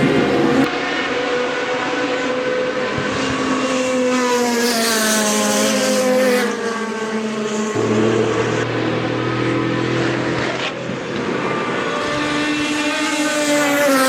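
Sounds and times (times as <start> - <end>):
race car engine running hard: 6.5 - 14.0
low steady engine note: 11.1 - 13.6.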